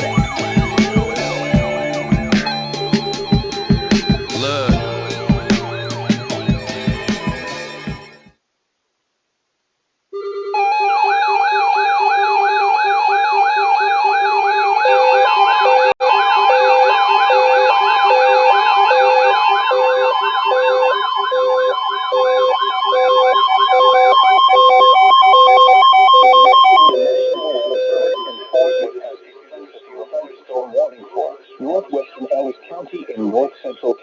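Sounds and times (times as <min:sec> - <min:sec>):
low repeating beep: 0:00.0 - 0:08.2
steady high tones: 0:00.0 - 0:08.3
warbling alert tone: 0:00.0 - 0:08.3.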